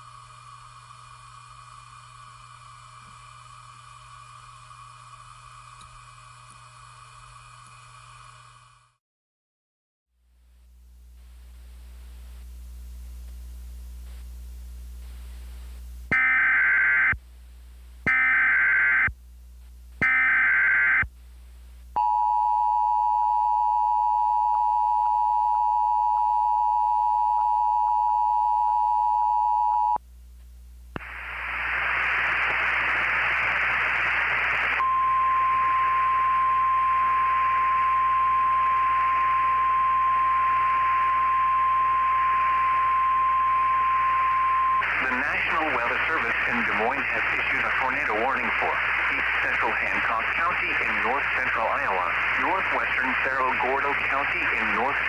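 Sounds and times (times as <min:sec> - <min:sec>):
radio static: 0:31.0 - 0:55.0.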